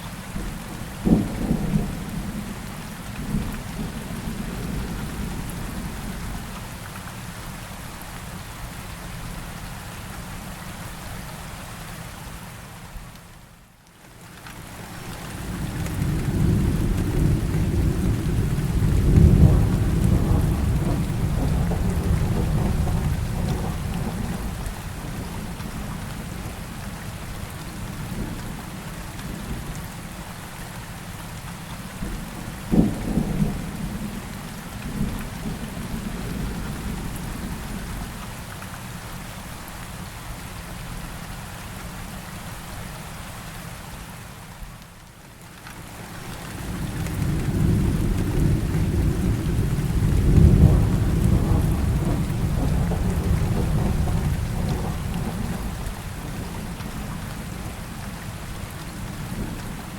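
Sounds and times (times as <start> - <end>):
steady rain: 0.0 - 59.9
thunder rolling: 15.7 - 24.7, 46.6 - 57.1.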